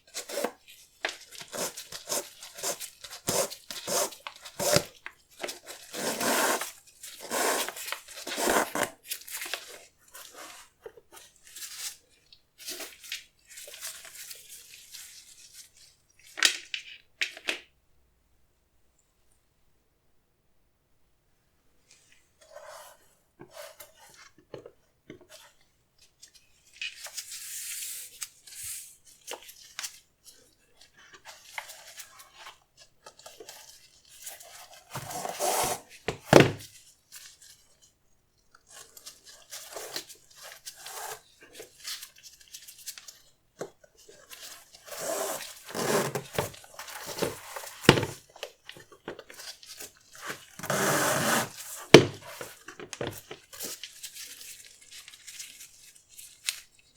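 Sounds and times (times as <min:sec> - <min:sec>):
paper packaging rustling: 0:00.2 - 0:11.3, 0:33.3 - 0:36.8, 0:44.0 - 0:56.8.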